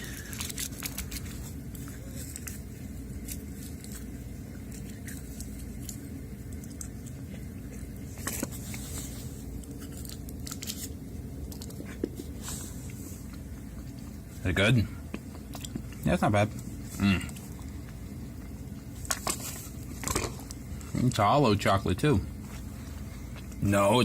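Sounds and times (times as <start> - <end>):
wrapper crinkling and clicking: 0.0 - 2.6, 9.6 - 11.8
low room hum: 0.0 - 24.0.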